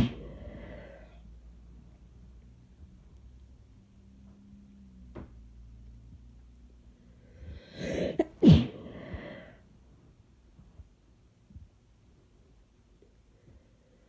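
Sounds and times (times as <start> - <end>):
person sneezing: 0.0 - 0.8, 7.7 - 9.4.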